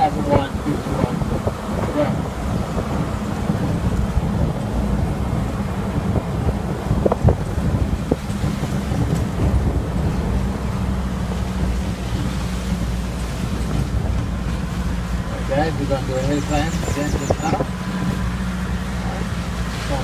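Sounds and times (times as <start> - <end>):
vehicle engine and road rumble: 0.0 - 20.0
wind buffeting microphone: 0.0 - 20.0.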